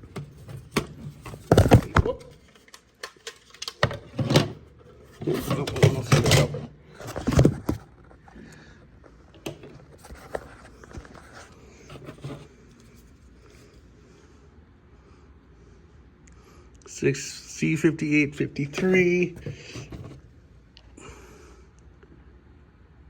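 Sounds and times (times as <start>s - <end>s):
plastic housings knocking and scraping: 0.0s - 8.2s, 9.4s - 12.5s, 18.8s - 20.2s.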